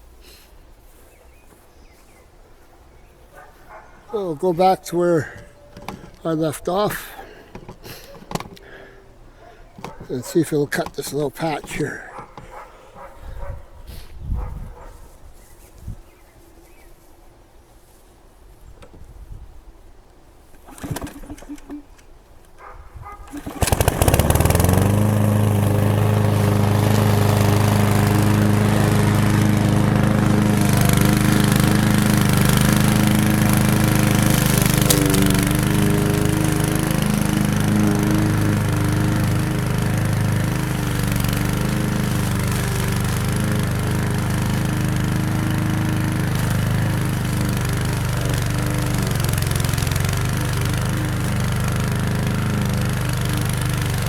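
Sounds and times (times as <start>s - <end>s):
lawn mower engine running: 4.2s - 9.0s, 20.5s - 21.8s, 23.3s - 54.0s.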